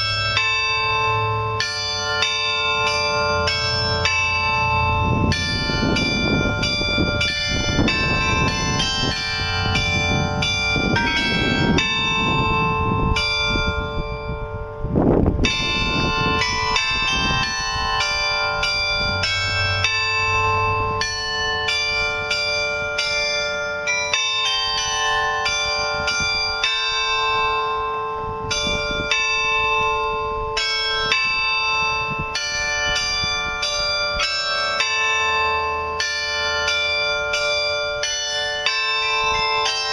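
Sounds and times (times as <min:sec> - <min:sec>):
carillon bells playing a tune: 0:00.0 - 0:39.9.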